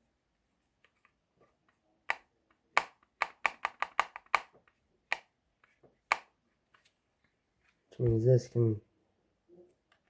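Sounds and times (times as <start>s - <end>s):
plastic building bricks clicking: 2.8s - 5.3s.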